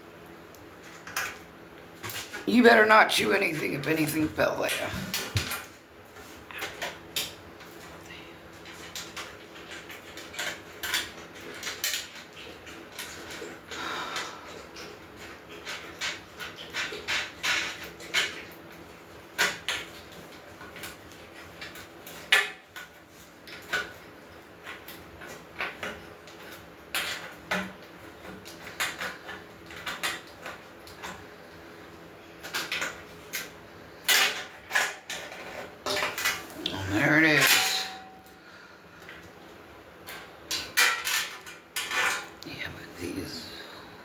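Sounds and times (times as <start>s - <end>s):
metal grill parts clinking: 37.0s - 38.3s.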